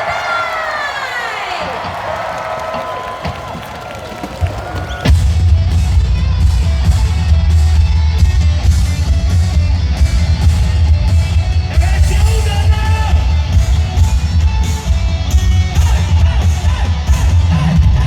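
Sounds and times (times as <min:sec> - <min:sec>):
vocals: 0:00.0 - 0:02.1, 0:11.6 - 0:14.6, 0:15.2 - 0:18.0
live rock band playing: 0:05.0 - 0:18.0.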